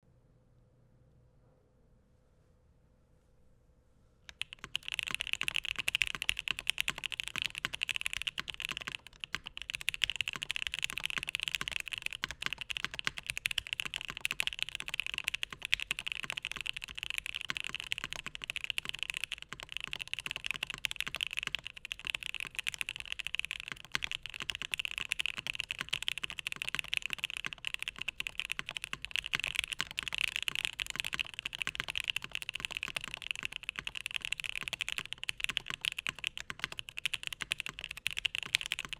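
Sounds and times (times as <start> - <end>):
mechanical keyboard typing: 4.3 - 38.9.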